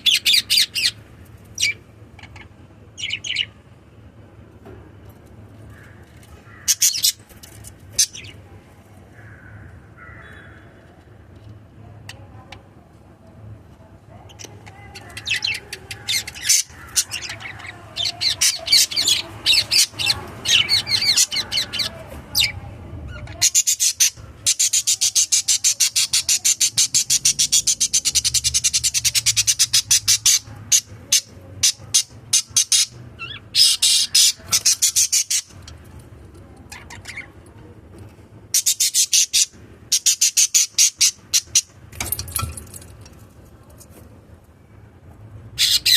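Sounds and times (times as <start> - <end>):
parrots chirping: 0.0 - 1.0, 6.5 - 7.3, 14.3 - 35.8, 38.5 - 42.8, 45.6 - 45.9.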